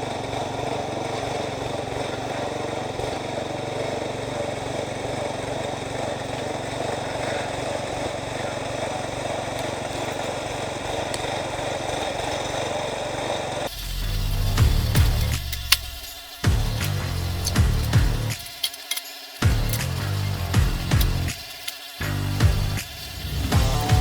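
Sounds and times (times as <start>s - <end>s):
small backhoe engine running: 0.0s - 24.0s
music with heavy beat: 14.0s - 15.6s, 16.4s - 18.4s, 19.4s - 24.0s.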